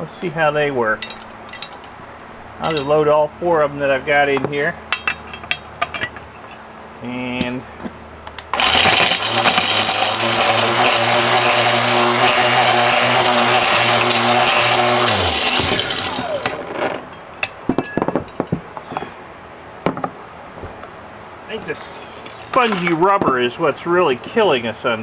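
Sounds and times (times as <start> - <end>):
rattle and grinding of plastic: 7.8 - 18.6, 21.6 - 23.4
crusher motor humming: 8.5 - 17.3.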